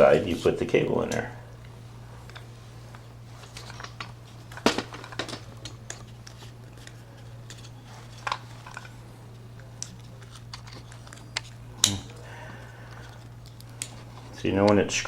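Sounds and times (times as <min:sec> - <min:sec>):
steady low hum: 0:00.0 - 0:15.0
small parts clicking and tapping: 0:09.6 - 0:12.2, 0:12.9 - 0:14.0.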